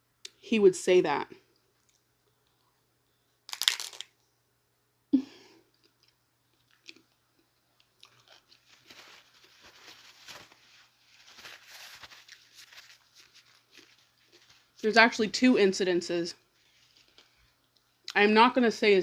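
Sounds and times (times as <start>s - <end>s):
crackly chewing: 1.5s - 4.1s, 5.7s - 9.7s, 12.9s - 14.8s, 16.6s - 18.1s
crunchy bite: 3.5s - 4.1s.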